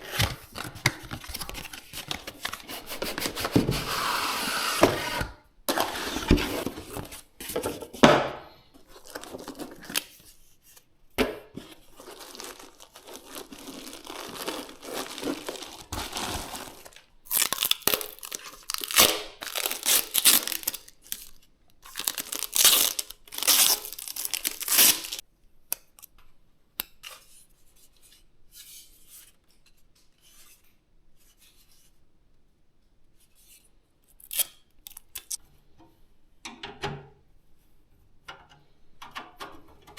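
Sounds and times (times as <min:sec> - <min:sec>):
plastic film crinkling and tearing: 0:11.6 - 0:25.2.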